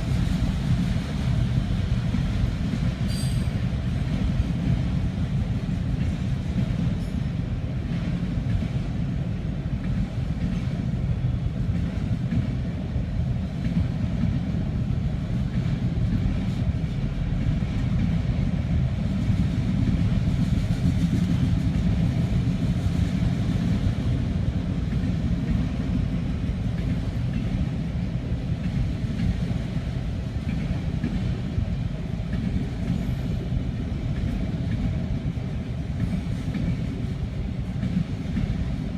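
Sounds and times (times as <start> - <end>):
freight train wheels rumbling: 0.0 - 38.9.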